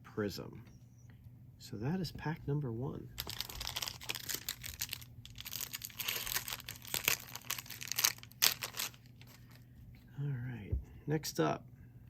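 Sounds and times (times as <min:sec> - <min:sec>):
wrapper crinkling and tearing: 0:03.2 - 0:09.6.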